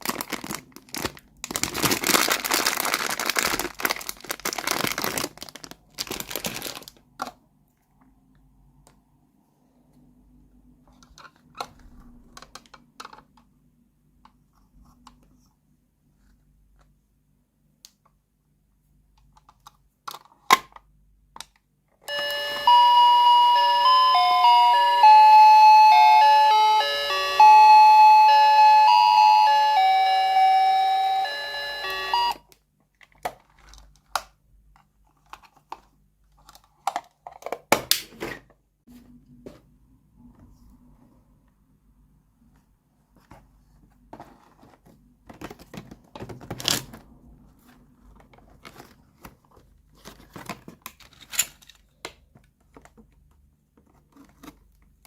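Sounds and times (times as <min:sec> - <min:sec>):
toy beeping jingle: 0:22.1 - 0:32.4.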